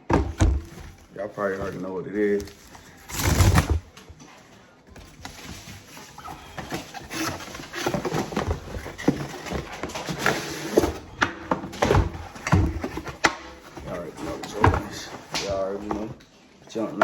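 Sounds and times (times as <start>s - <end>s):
box thump: 0.0s - 1.0s
cardboard and paper rustling: 0.1s - 16.2s.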